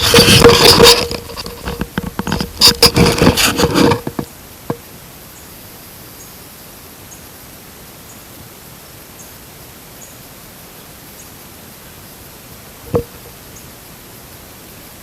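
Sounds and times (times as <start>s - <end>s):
rustling and scraping handling: 0.0s - 4.3s
faint steady hiss: 0.0s - 15.0s.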